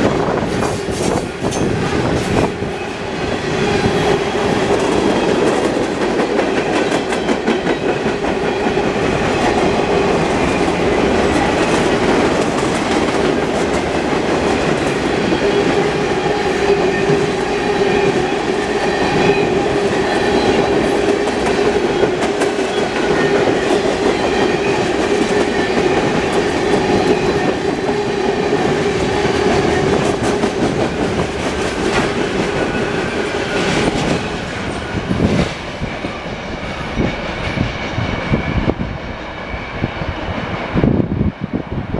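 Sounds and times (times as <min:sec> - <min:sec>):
wheel whine on rail: 0:00.0 - 0:41.9
train wheels clacking over rail joints: 0:03.7 - 0:36.2.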